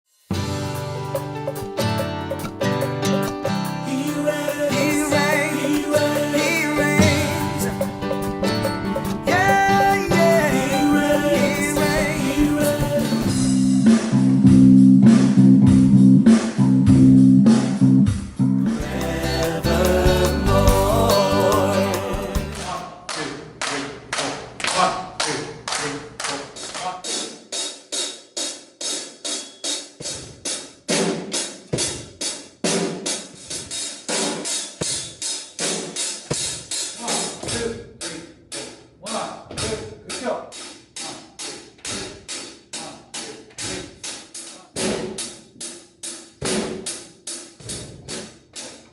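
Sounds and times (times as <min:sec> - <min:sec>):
drum hits: 0:00.3 - 0:22.8
band music: 0:00.4 - 0:15.4, 0:18.6 - 0:22.8
bass guitar: 0:00.4 - 0:22.8
sustained bass notes: 0:03.9 - 0:22.8
heavy drum hits: 0:07.0 - 0:17.2.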